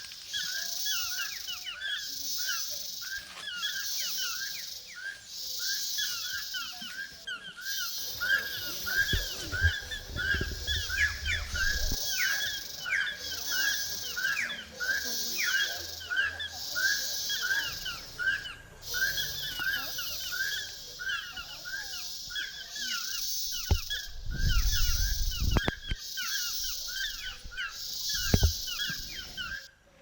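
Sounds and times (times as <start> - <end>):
animals chirping: 0.0 - 29.7
high insect buzz: 21.7 - 29.7.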